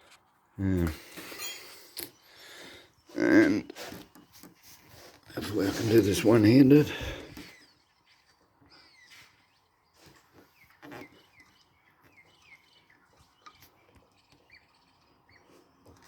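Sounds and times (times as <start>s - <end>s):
faint birds chirping: 0.0s - 16.0s.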